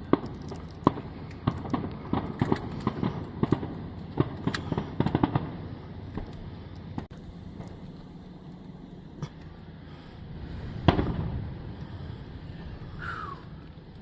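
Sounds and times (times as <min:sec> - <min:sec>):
fireworks pops and bangs: 0:00.0 - 0:08.1, 0:10.8 - 0:11.9.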